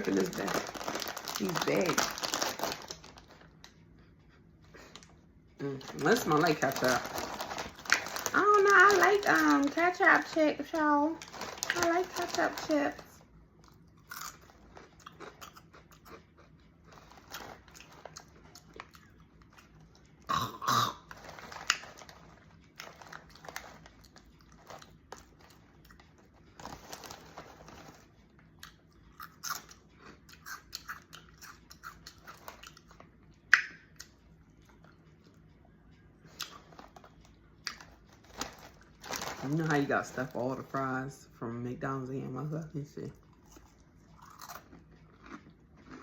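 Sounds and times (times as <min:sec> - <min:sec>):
person chewing crunchy snack: 0:00.0 - 0:03.7, 0:05.7 - 0:09.8, 0:11.2 - 0:12.7, 0:13.6 - 0:35.6, 0:43.2 - 0:46.0.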